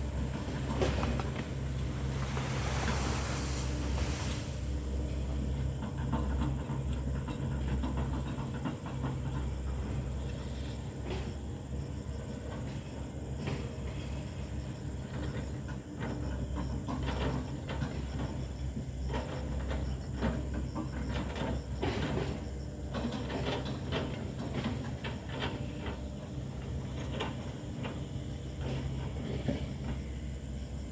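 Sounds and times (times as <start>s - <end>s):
excavator diesel engine running: 0.0s - 11.2s.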